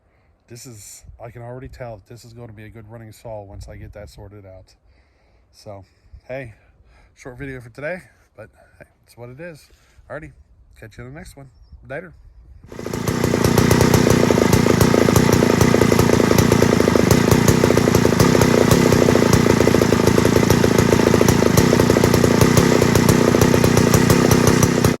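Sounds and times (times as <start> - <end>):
chainsaw running at high speed: 12.7 - 25.0.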